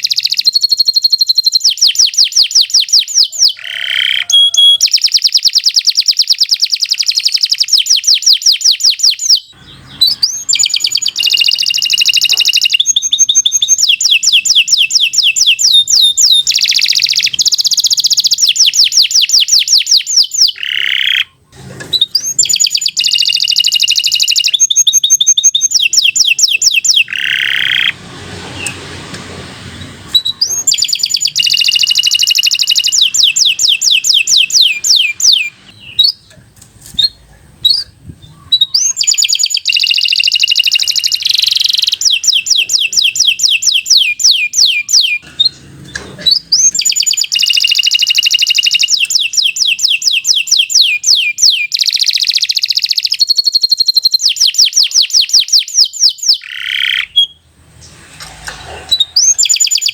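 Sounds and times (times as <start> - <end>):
canary singing trills: 0.0 - 28.8, 29.7 - 57.5, 58.6 - 59.9
hiss-like noise: 27.8 - 30.9.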